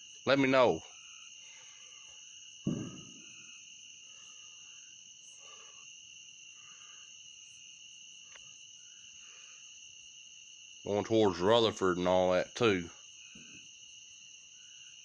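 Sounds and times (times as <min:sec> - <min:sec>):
high-pitched insect chorus: 0:00.0 - 0:15.0
loud bang: 0:02.7 - 0:03.4.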